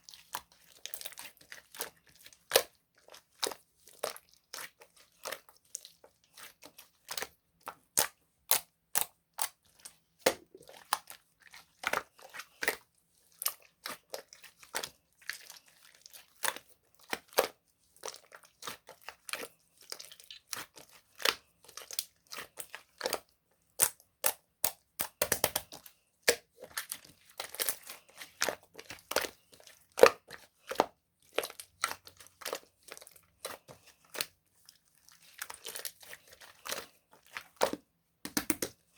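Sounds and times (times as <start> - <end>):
slime clicking and popping: 23.8 - 25.7, 38.3 - 38.7.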